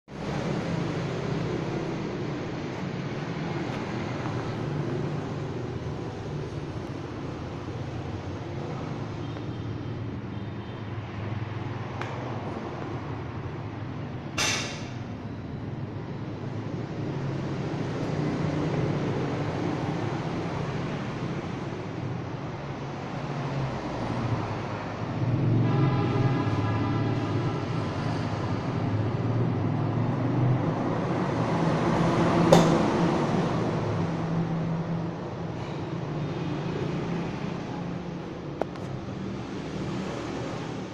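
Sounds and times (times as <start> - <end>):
sharp knock: 32.5 - 32.9.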